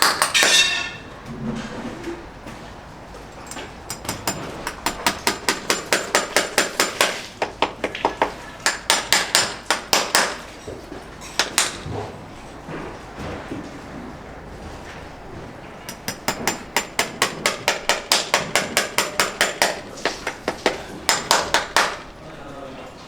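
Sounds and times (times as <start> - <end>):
hammer striking metal: 0.0 - 1.0, 3.5 - 10.6, 11.2 - 11.9, 15.9 - 22.1.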